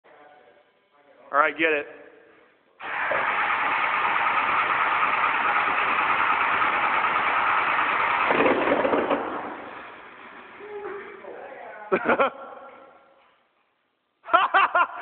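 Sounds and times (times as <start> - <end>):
diesel engine running roughly: 2.8 - 10.6.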